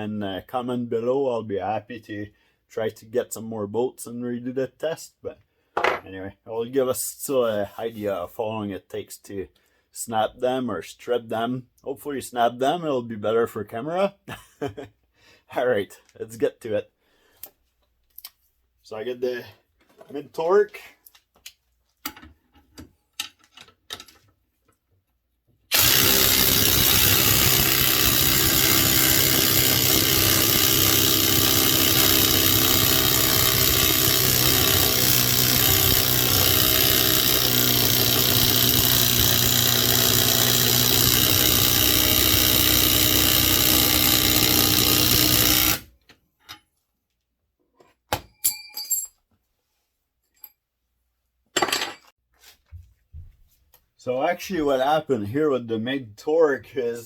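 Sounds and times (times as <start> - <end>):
impact wrench hammering: 25.7 - 45.9.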